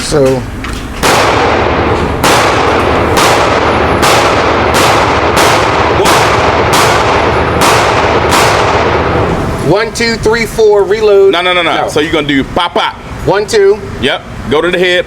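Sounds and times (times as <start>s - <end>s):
handgun shots echoing: 1.0s - 9.2s.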